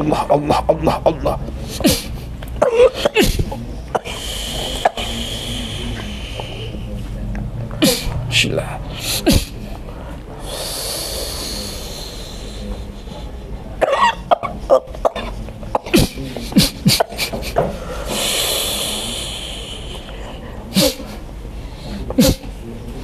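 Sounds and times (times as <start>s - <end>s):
breathy hisses of breath: 4.0s - 7.0s, 10.4s - 12.8s, 17.6s - 22.5s
woman coughing: 13.8s - 17.2s.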